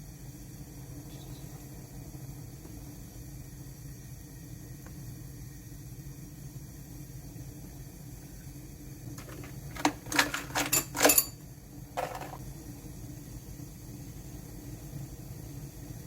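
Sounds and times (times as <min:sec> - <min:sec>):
tableware clinking: 0:09.2 - 0:11.4, 0:12.0 - 0:12.4.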